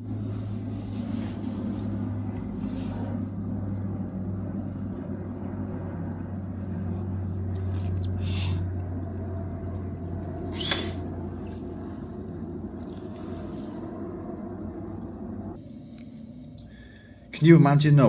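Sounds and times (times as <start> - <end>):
steady low rumble: 0.0 - 18.0
short rustle: 0.3 - 3.2.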